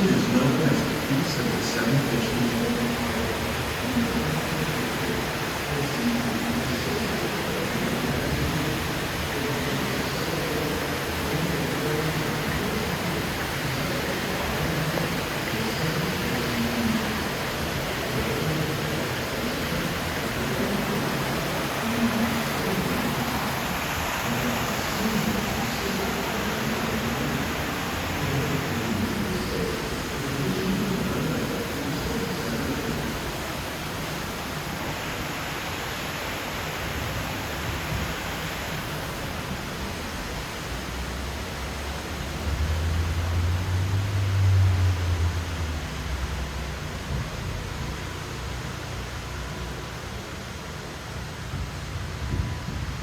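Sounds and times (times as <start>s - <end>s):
hiss of moving air and water: 0.0s - 53.0s.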